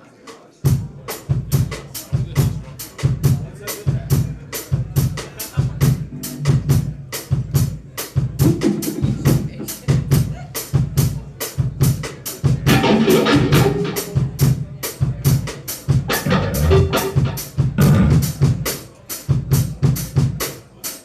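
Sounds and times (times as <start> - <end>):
snare drum: 16.1 - 18.6.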